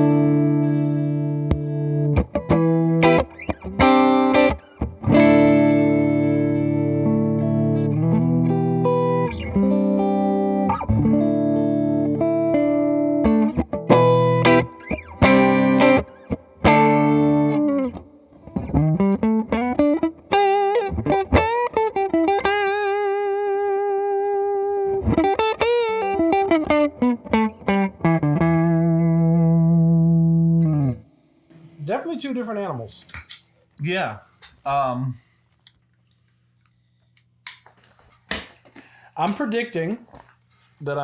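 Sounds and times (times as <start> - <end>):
overdriven electric guitar: 0.0 - 31.8.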